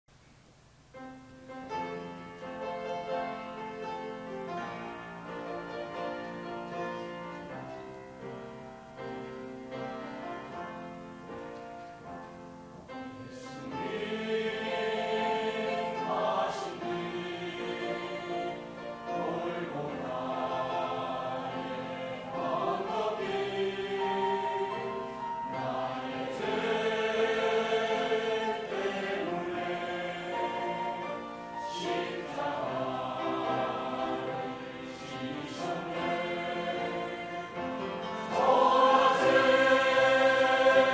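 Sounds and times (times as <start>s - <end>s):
keyboard accompaniment: 0.8s - 40.9s
choir singing: 13.2s - 40.9s.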